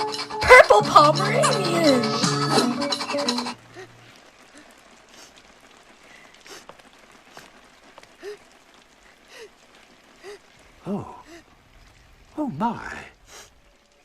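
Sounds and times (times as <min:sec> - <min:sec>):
children's song: 0:00.0 - 0:03.6
steady rain: 0:00.0 - 0:14.0.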